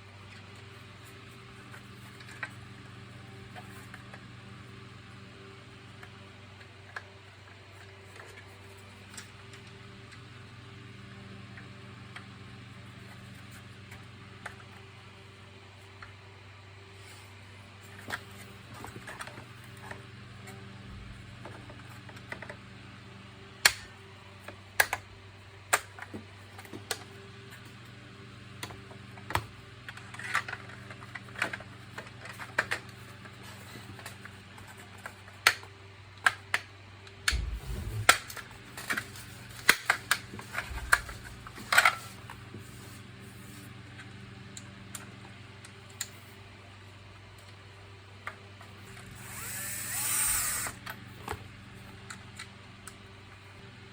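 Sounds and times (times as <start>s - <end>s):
steady low hum: 37.2s - 53.9s.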